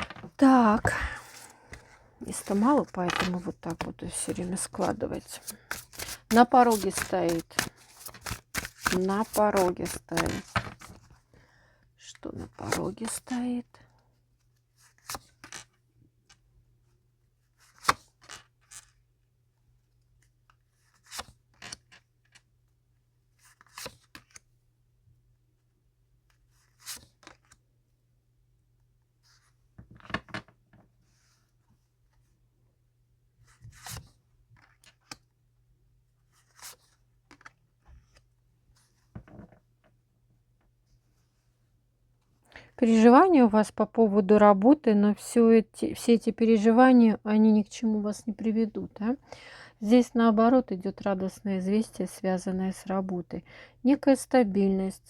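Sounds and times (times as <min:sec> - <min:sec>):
cards flicking and tapping: 0:02.4 - 0:10.9.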